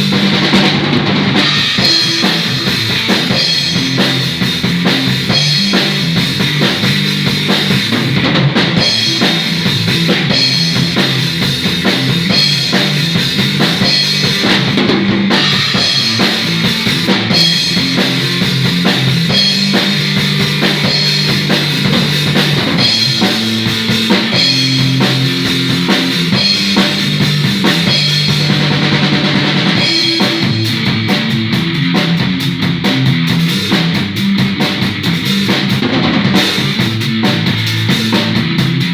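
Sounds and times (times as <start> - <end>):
drum kit beat: 0.0 - 38.9.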